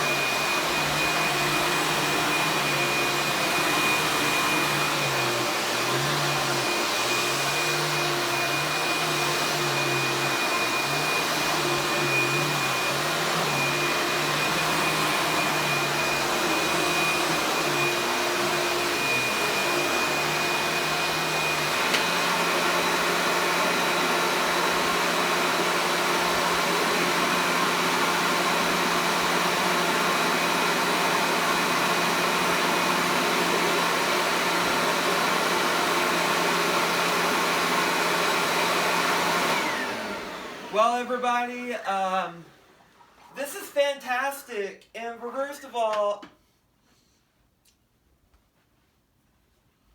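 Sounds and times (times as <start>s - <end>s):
vacuum cleaner click: 0.0s - 25.0s
vacuum cleaner motor whining: 0.0s - 43.1s.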